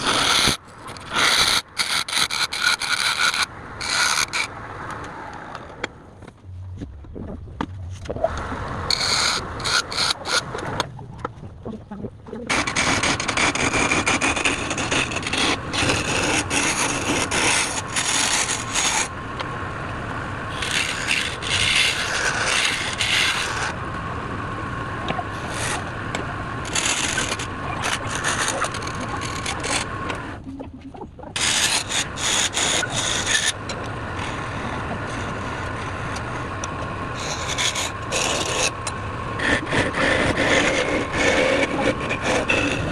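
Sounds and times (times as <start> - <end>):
tool scraping spinning wood: 0.0 - 4.6, 8.9 - 10.9, 12.5 - 19.2, 20.5 - 23.8, 25.1 - 30.4, 31.3 - 42.9
wood lathe humming: 12.5 - 30.4, 31.4 - 42.9.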